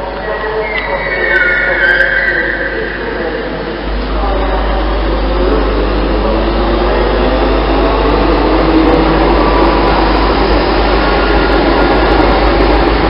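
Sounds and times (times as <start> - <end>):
faint rising whine: 0.0 - 6.3
train rushing hum: 0.0 - 13.0.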